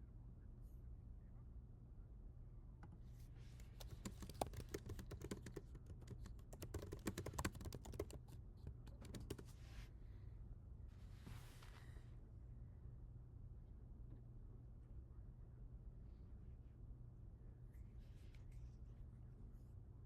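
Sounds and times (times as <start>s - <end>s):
keyboard typing: 3.6s - 9.5s.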